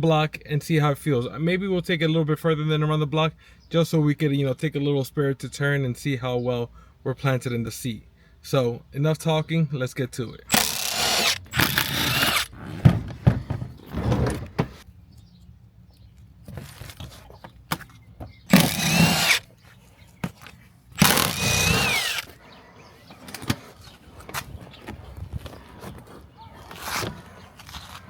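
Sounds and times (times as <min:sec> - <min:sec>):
power drill whining: 0:10.5 - 0:12.8, 0:18.5 - 0:19.5, 0:21.0 - 0:22.4.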